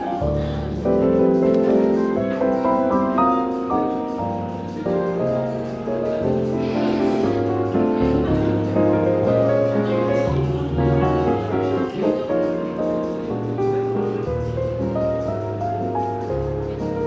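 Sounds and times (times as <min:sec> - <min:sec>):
jazz piano: 0:00.0 - 0:17.0
walking bass line: 0:07.2 - 0:17.0.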